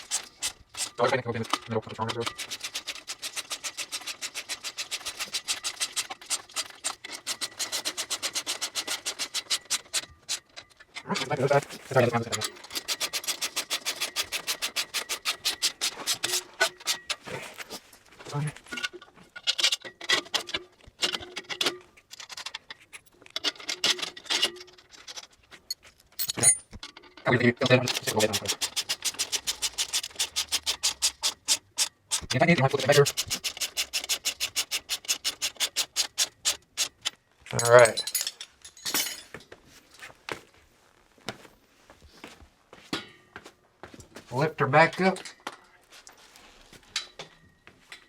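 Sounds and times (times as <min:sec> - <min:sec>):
tool scraping on metal bolts: 0:00.0 - 0:17.8, 0:18.6 - 0:38.4
ratchet wrench clicking: 0:27.9 - 0:37.1.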